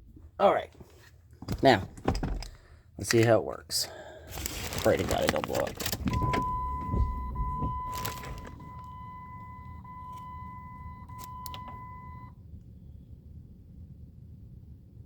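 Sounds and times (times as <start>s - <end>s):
steady electronic beep tone: 6.2s - 12.3s.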